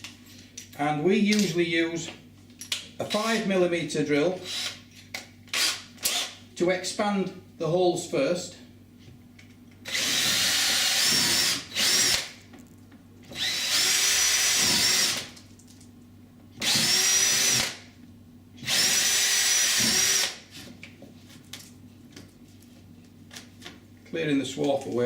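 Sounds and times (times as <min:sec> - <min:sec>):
power drill whining: 0:04.4 - 0:04.8, 0:05.5 - 0:06.4, 0:09.9 - 0:12.3, 0:13.3 - 0:15.3, 0:16.6 - 0:17.8, 0:18.6 - 0:20.4.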